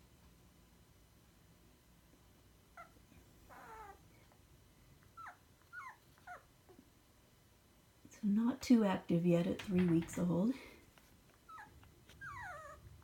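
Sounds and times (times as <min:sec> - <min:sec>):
puppies whimpering: 0:03.5 - 0:04.0, 0:05.2 - 0:06.5, 0:11.5 - 0:12.9.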